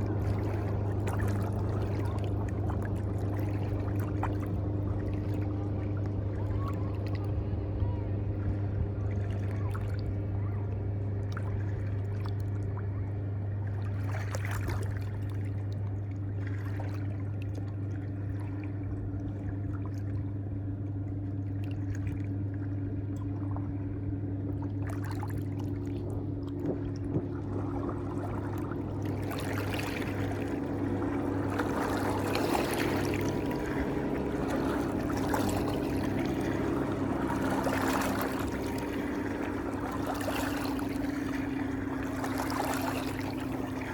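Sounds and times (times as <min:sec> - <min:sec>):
running water: 0:00.0 - 0:07.3, 0:24.5 - 0:43.9
low hum: 0:00.0 - 0:43.9.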